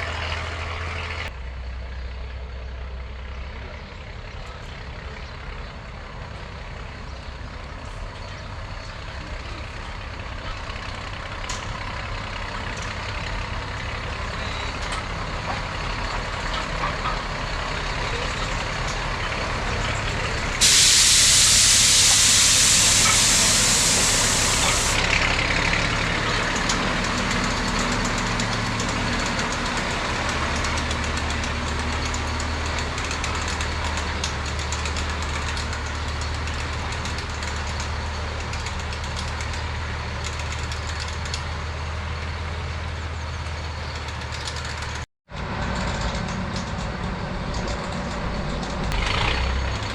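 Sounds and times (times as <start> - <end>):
train engine rumble: 0.0 - 49.9
hiss of released pressure: 20.6 - 25.0.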